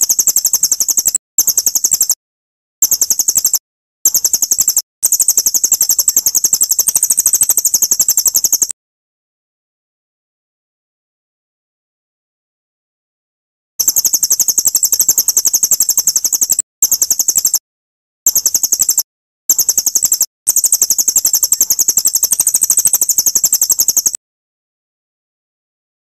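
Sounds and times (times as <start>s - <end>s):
bird fast high trill: 18.3s - 24.2s.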